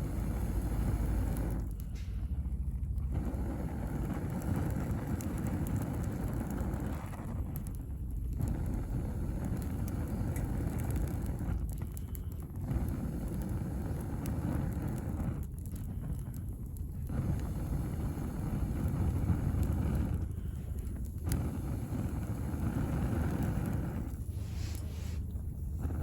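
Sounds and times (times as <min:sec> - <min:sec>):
wood stove rumble: 0:00.0 - 0:26.0
faint wood crackles: 0:02.9 - 0:26.0.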